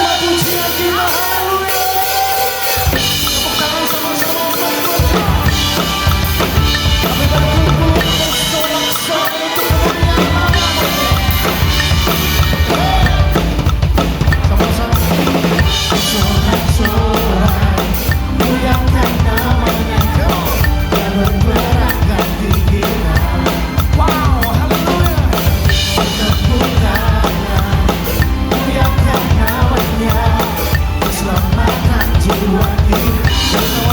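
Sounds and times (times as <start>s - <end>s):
backing song: 0.0s - 33.9s
fast drum kit playing: 0.0s - 33.9s.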